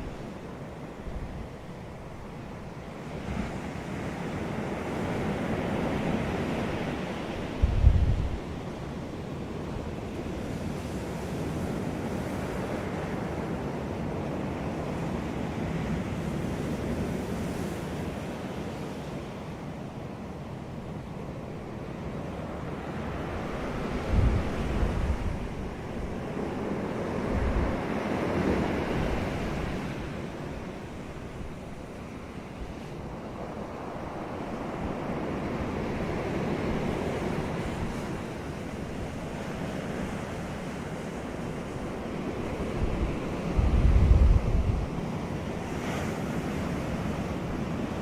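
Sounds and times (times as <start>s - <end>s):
sea surf on beach: 0.0s - 48.0s
wind buffeting microphone: 5.0s - 9.0s, 23.1s - 48.0s.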